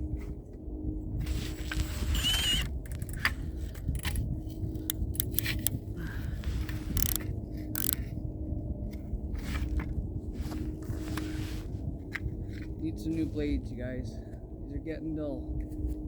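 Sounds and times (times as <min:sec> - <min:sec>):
drill motor drone: 0:01.2 - 0:04.2, 0:04.9 - 0:05.7, 0:06.9 - 0:07.2, 0:07.8 - 0:08.0
ice crunching and clicking: 0:04.9 - 0:05.7.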